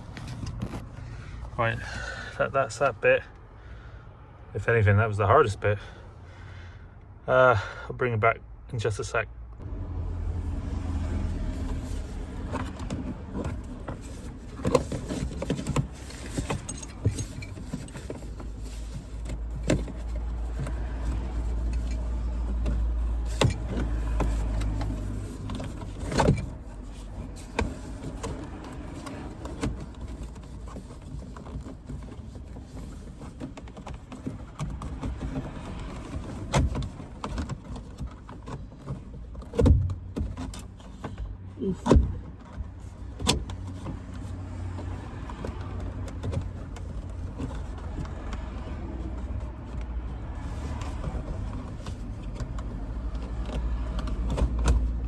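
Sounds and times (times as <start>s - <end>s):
metal clinks of seatbelt hardware: 16.5s - 17.6s.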